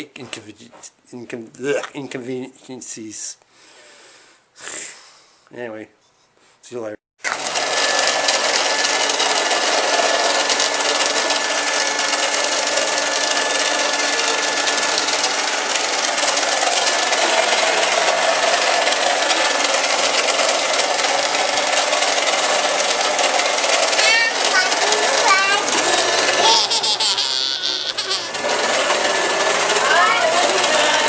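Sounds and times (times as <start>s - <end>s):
vacuum cleaner running: 7.2s - 31.0s.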